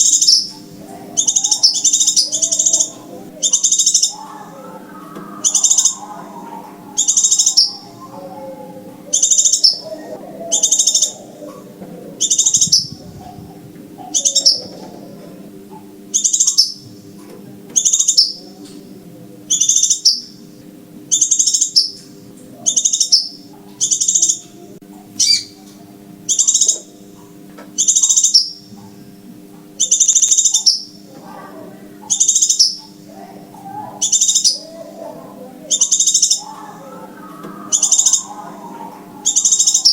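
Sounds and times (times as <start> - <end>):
high-pitched bird call: 0.0 - 15.1, 33.6 - 39.9
faint low hum: 0.0 - 39.9.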